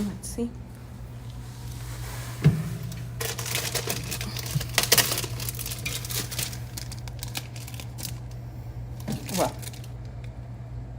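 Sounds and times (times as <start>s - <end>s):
low steady hum: 0.0s - 10.9s
small clicks and crackles: 2.9s - 8.4s, 9.0s - 10.4s
hands crinkling packaging: 2.9s - 10.3s.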